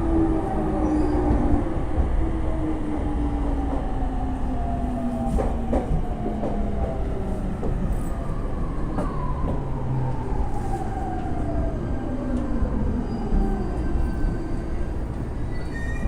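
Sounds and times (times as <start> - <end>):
track clacks: 5.3 - 7.9.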